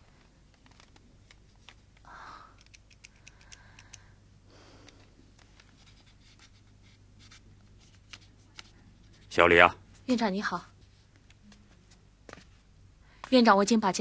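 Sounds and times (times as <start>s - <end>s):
faint low hum: 0.0s - 14.0s
small clicks: 2.0s - 4.1s.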